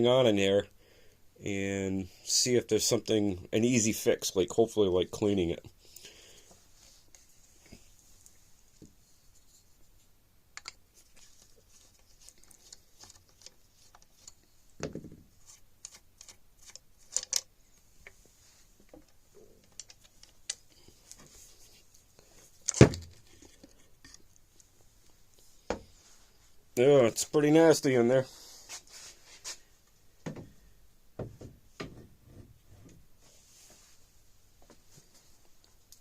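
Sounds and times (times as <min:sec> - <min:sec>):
rifle parts clicking and knocking: 0:15.8 - 0:17.5, 0:18.9 - 0:21.2, 0:22.6 - 0:24.2.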